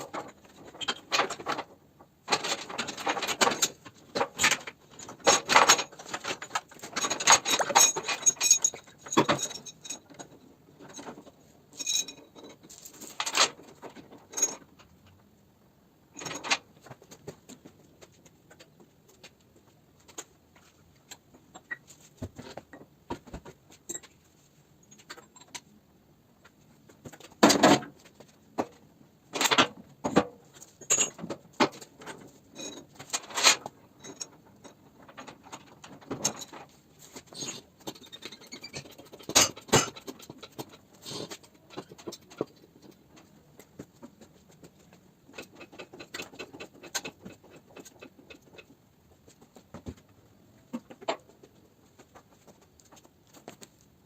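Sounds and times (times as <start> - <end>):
metal tools clinking: 5.0 - 13.5, 30.8 - 31.2.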